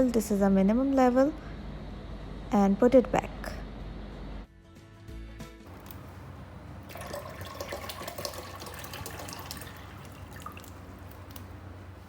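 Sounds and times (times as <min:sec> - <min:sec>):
tap water filling tank: 0:06.8 - 0:11.6
water splashing and dripping: 0:06.9 - 0:11.6.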